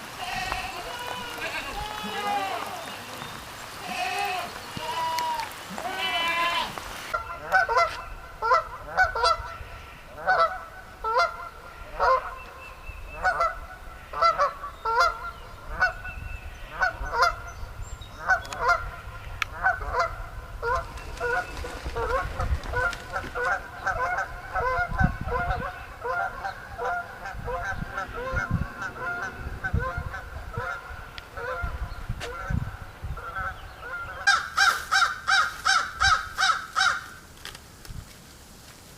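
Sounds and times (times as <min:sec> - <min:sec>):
geese honking: 0:00.0 - 0:12.6, 0:13.2 - 0:16.1, 0:18.2 - 0:32.6.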